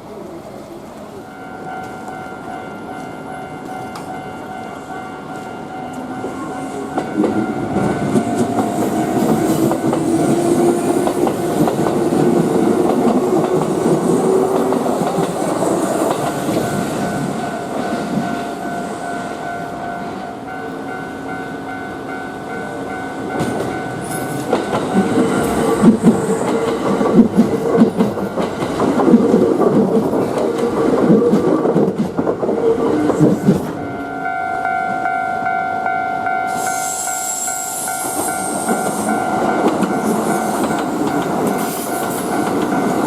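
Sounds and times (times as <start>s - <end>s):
train wheels clattering: 5.3s - 19.4s, 23.1s - 34.1s, 36.5s - 43.0s.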